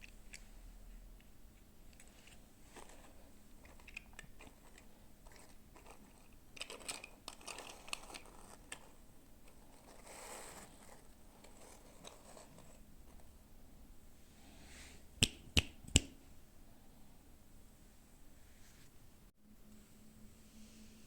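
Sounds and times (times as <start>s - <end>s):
plastic toy pieces clicking: 3.6s - 8.9s.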